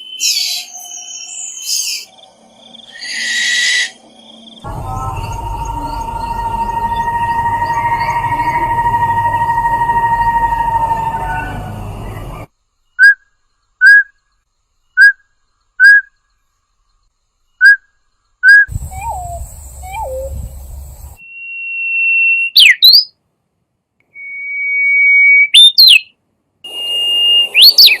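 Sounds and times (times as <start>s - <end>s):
long whistles with sweeping notes: 0.0s - 2.1s, 2.8s - 13.2s, 18.4s - 23.0s, 26.7s - 28.0s
low falling bird notes: 4.6s - 12.5s, 18.7s - 22.8s
short whistled bird notes: 26.7s - 28.0s.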